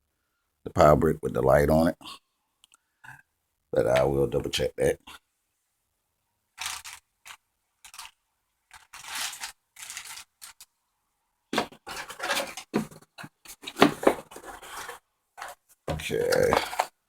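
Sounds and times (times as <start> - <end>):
packaging rustling and scraping: 6.6 - 10.7, 11.6 - 17.0.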